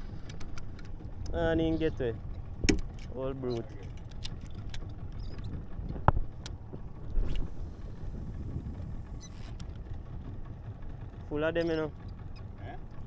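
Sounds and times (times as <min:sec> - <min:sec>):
outboard engine running: 0:00.0 - 0:13.0
wind on microphone: 0:04.4 - 0:10.3.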